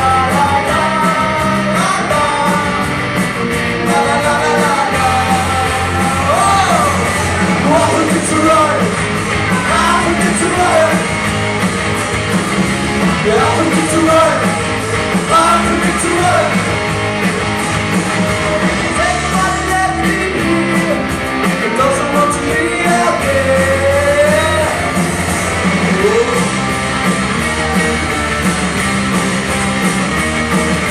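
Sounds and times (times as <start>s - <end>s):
person singing: 0.0s - 3.0s, 3.7s - 11.1s, 13.2s - 16.6s, 18.2s - 25.0s, 25.7s - 26.6s
bass guitar: 0.0s - 30.9s
drums: 0.0s - 30.9s
electric guitars: 0.0s - 30.9s.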